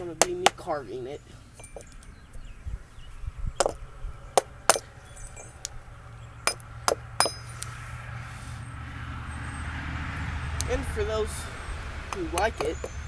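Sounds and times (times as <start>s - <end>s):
wooden mallet striking chisel: 0.0s - 0.7s, 3.6s - 5.6s, 6.5s - 7.7s, 12.0s - 13.0s.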